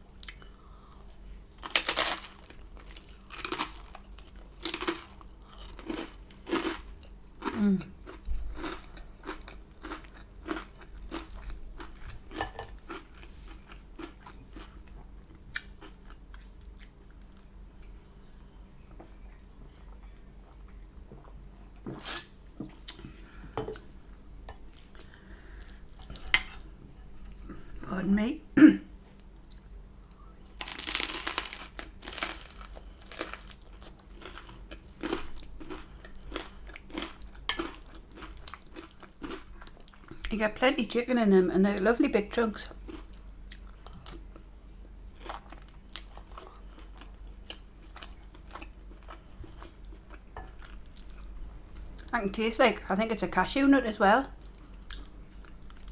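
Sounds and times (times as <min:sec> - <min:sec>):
chewing and biting food: 0:01.4 - 0:17.9, 0:30.6 - 0:40.3, 0:45.2 - 0:51.3.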